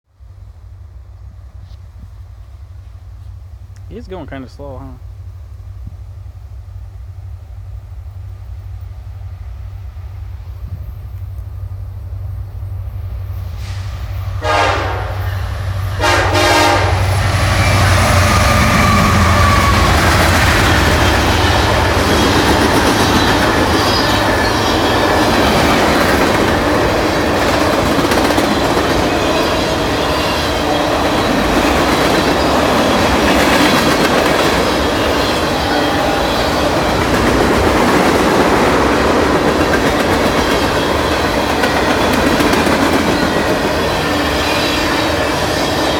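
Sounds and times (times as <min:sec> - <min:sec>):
diesel locomotive engine hum: 0:00.1 - 0:45.9
train horn blasts: 0:14.4 - 0:15.4, 0:16.0 - 0:20.2
freight cars rumbling: 0:16.8 - 0:45.9
wheels clacking over rail joints: 0:19.6 - 0:45.4.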